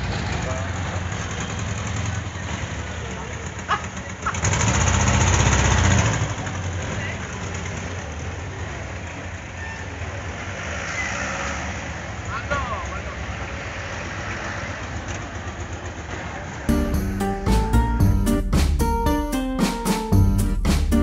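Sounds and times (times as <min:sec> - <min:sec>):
car engine idling and revving: 0:00.0 - 0:09.5.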